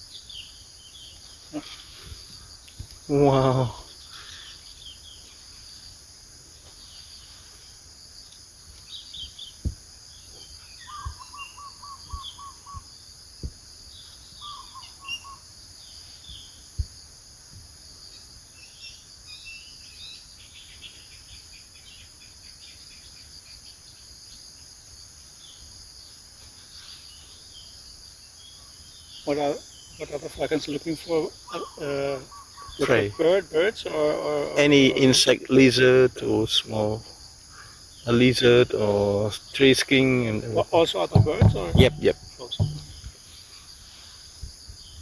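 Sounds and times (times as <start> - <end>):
small birds chirping: 0.0 - 6.0, 6.6 - 16.8, 26.5 - 34.9
insect chorus: 0.0 - 45.0
bird low repeated notes: 40.6 - 43.0.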